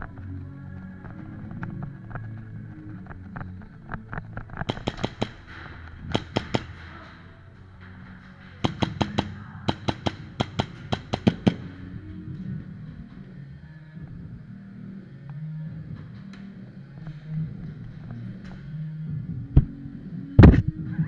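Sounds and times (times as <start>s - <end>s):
airsoft gun shots: 4.7s - 6.8s, 8.6s - 11.8s.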